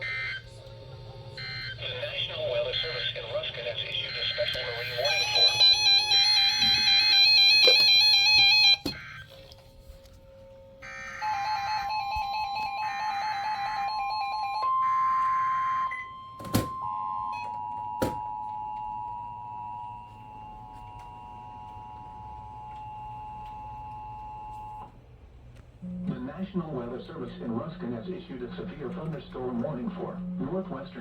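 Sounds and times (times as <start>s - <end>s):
two-tone attention signal: 1.4s - 1.9s, 4.0s - 9.3s, 10.8s - 24.9s.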